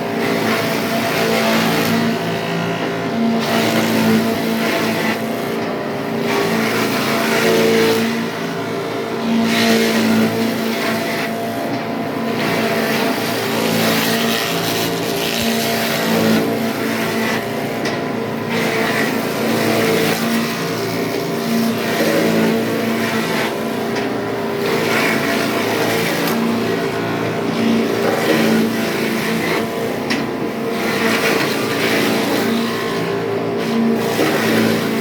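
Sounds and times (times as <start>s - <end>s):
grinding machine running: 0.0s - 35.0s.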